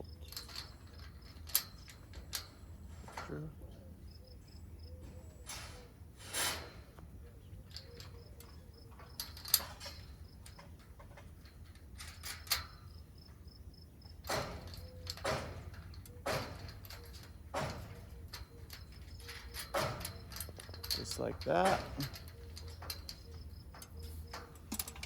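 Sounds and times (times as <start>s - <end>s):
short scraping strokes: 5.5s - 6.9s
faint insect chirping: 12.0s - 15.1s
sharp metal click: 14.2s - 25.0s.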